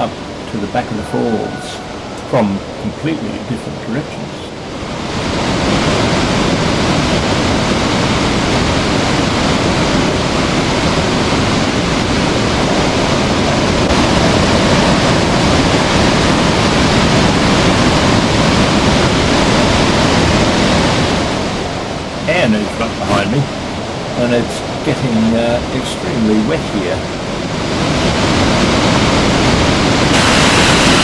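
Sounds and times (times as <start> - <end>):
waterfall rushing: 0.0 - 31.0.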